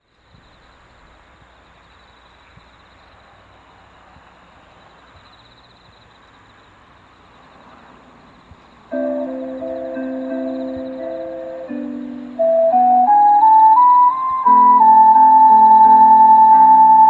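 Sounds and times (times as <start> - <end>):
steady low hiss: 0.0 - 17.0
faint high pulsing trill: 8.9 - 17.0.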